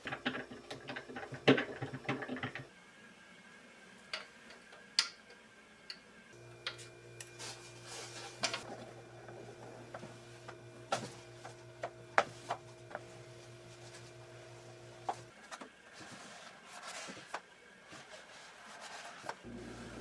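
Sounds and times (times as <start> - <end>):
electrical hum: 0.0 - 2.7, 6.4 - 15.4, 19.4 - 20.0.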